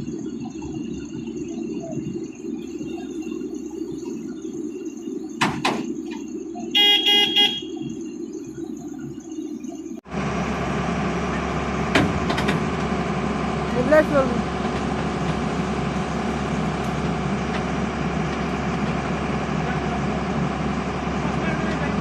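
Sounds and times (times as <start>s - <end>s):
hissy engine noise: 0.0s - 22.0s
vehicle horn toots: 6.8s - 7.8s
heavy vehicle engine running: 10.0s - 22.0s.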